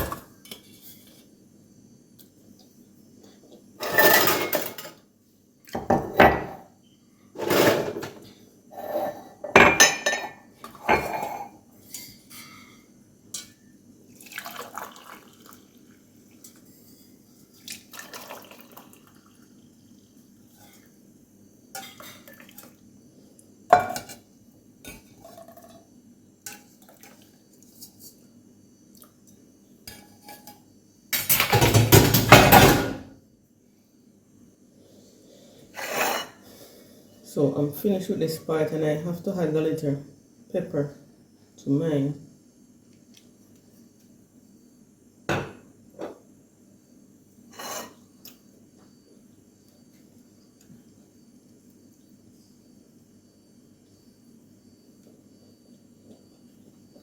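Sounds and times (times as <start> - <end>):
dishes and cutlery clattering: 3.8 - 5.0, 7.4 - 8.2, 8.8 - 12.8, 23.7 - 24.2, 31.2 - 33.1.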